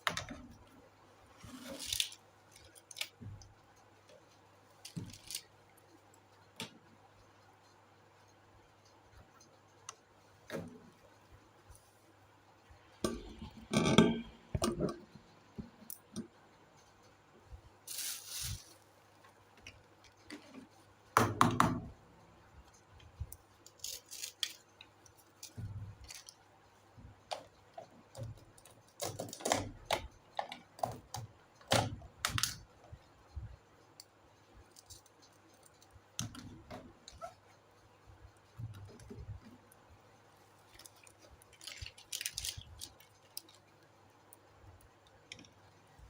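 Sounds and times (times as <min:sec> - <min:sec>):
plastic toy pieces clinking: 0:01.6 - 0:03.1, 0:23.7 - 0:24.6, 0:40.8 - 0:43.6.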